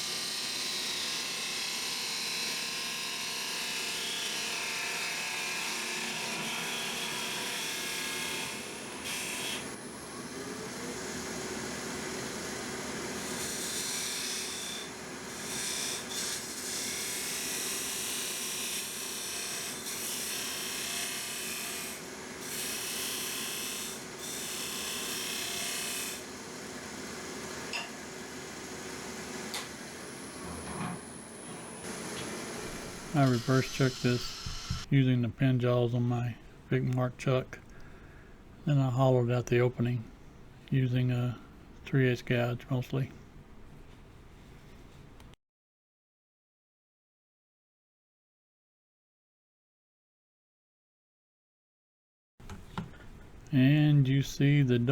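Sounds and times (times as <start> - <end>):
wood lathe running: 18.7 - 34.9
turning tool scraping wood: 32.6 - 34.9.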